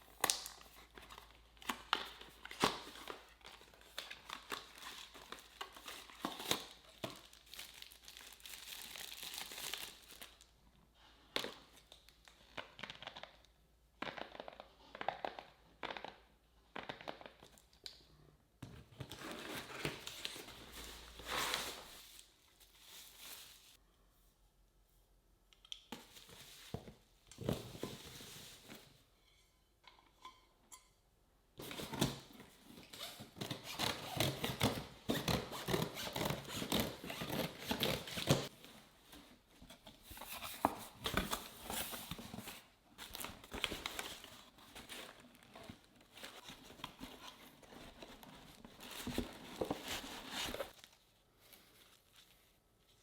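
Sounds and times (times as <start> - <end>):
packaging crinkling and tearing: 0.0 - 10.5.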